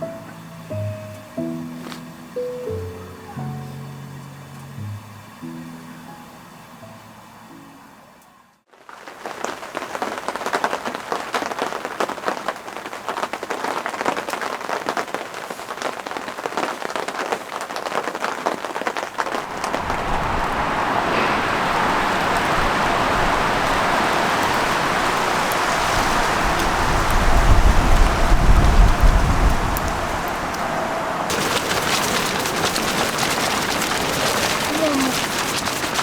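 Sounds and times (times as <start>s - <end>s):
snow pelting a surface: 8.8s - 36.0s
wind buffeting microphone: 19.4s - 36.0s
wind gust: 19.4s - 36.0s.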